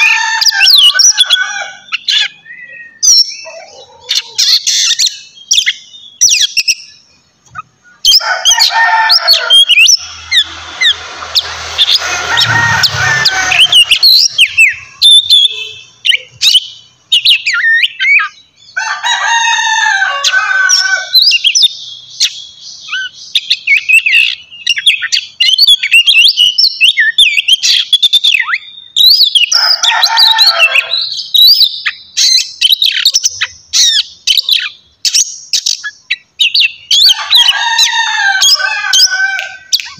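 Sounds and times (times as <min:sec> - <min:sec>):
bird singing whistles: 0:02.0 - 0:03.5.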